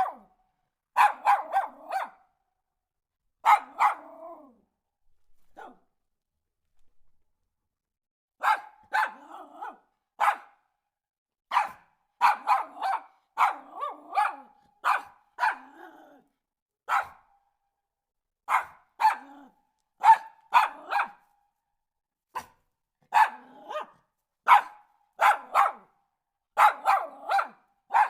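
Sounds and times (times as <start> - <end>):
dog barking: 0.0 - 2.4, 3.4 - 4.6, 5.4 - 5.9, 8.4 - 10.8, 11.5 - 16.2, 16.8 - 17.4, 18.4 - 21.3, 22.3 - 28.0.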